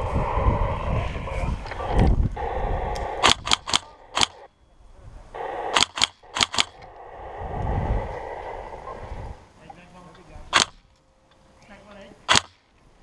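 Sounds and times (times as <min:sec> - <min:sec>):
airsoft gun shots: 0:03.1 - 0:04.5, 0:05.7 - 0:06.8, 0:10.5 - 0:10.8, 0:12.3 - 0:12.6.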